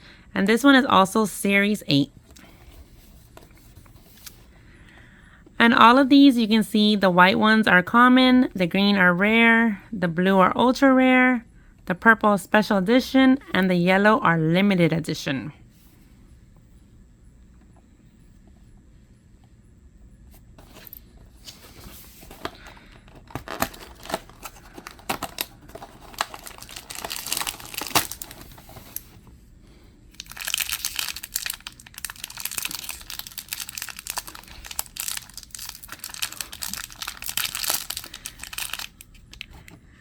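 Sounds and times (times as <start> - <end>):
packaging tearing and crinkling: 23.2 - 29.1, 30.2 - 39.6.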